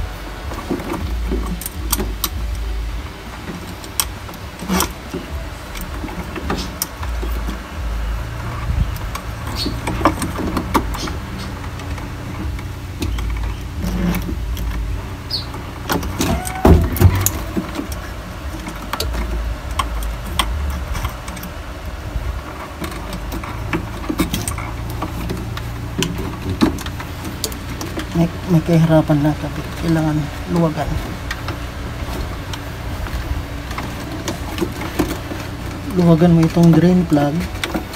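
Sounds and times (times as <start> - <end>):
low rumble: 0.0 - 37.9
plastic and metal parts clicking: 0.0 - 37.9.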